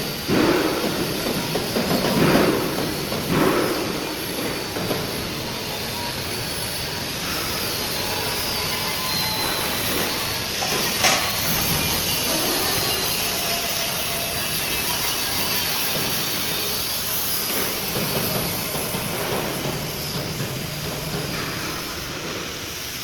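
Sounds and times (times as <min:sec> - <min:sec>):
factory machinery noise with hiss: 0:00.0 - 0:23.0
sharp metallic clank: 0:07.2 - 0:22.7.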